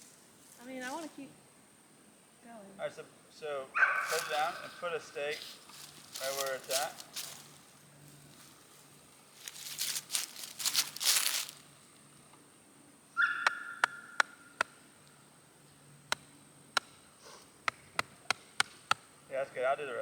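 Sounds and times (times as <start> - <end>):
rustling: 0.0 - 1.4, 3.9 - 12.4
stake being hammered into ground: 13.2 - 14.8, 16.1 - 19.1.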